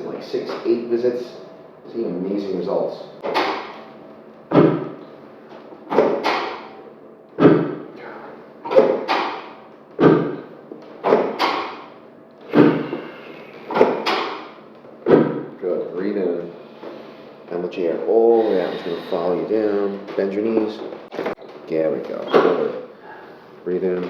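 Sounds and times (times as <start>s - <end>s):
drop table thumping: 4.5s - 5.0s, 7.4s - 7.9s, 8.7s - 11.8s, 13.7s - 15.5s.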